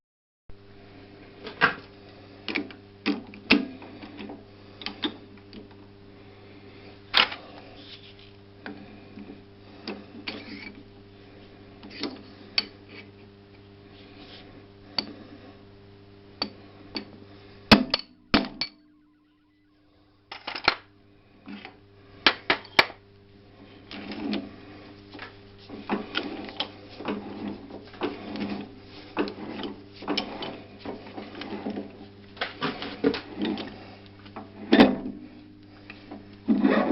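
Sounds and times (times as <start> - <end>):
steady low hum: 3.7 - 31.3.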